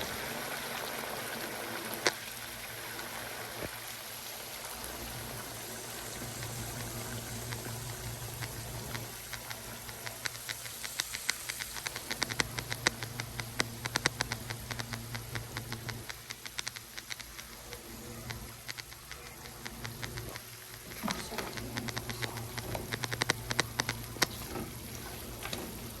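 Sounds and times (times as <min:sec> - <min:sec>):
oil spattering and crackling: 0:04.8 - 0:17.6
low steady hum: 0:04.8 - 0:26.0.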